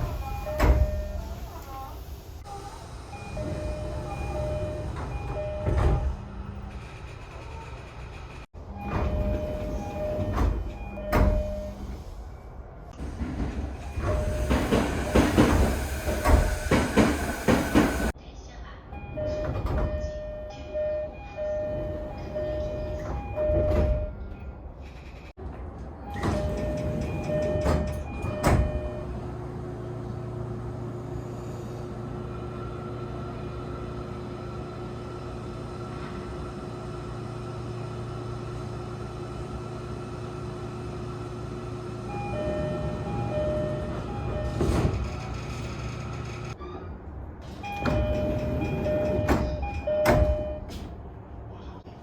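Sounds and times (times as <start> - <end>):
train door chime: 0.0 - 1.3, 3.2 - 6.1, 8.7 - 12.0, 19.1 - 24.5, 26.1 - 29.1, 42.0 - 45.4, 47.6 - 50.9
train electrical hum: 0.0 - 51.9
sliding doors knocking: 8.8 - 11.6, 13.0 - 18.2, 42.4 - 46.6, 47.6 - 50.8.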